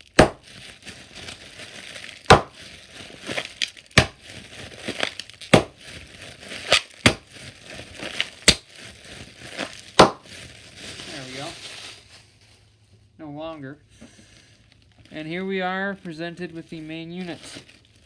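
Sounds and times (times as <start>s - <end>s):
bubble wrap popping: 0.0s - 12.1s
plastic crinkling: 0.0s - 12.7s, 14.2s - 18.0s.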